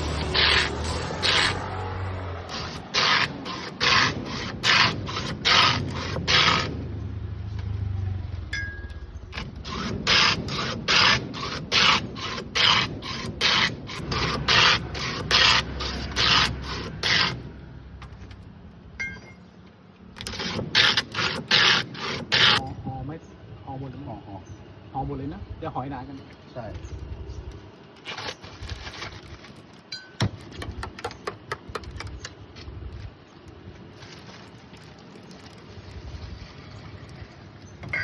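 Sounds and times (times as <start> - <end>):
ice scraped by hand: 0.0 - 7.0, 9.3 - 17.5, 20.2 - 22.7, 28.0 - 29.7.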